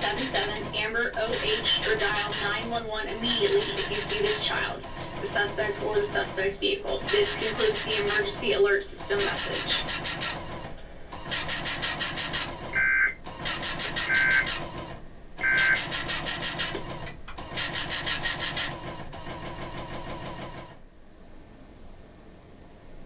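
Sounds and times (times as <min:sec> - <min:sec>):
short data tone bursts: 0:11.4 - 0:14.6, 0:15.4 - 0:16.2.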